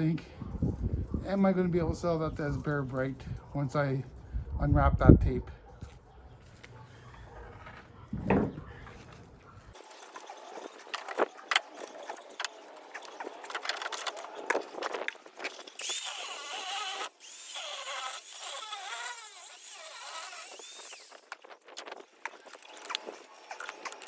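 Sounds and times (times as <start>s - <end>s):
angle grinder cutting copper: 15.7s - 21.4s.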